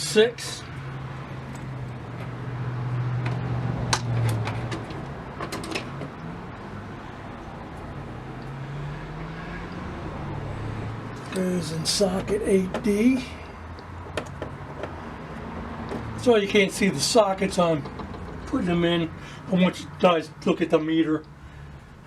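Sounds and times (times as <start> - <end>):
sharp clicks and light taps: 13.7 - 15.0.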